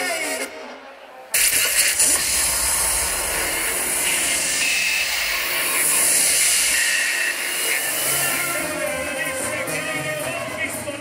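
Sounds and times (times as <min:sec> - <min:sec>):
loud steady hissing: 0:01.4 - 0:09.4.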